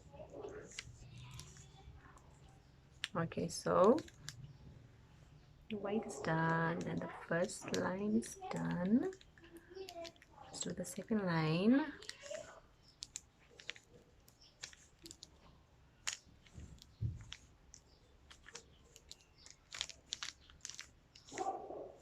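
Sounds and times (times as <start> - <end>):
puzzle cube clicking: 0.6 - 1.8, 2.9 - 4.5, 12.0 - 21.5.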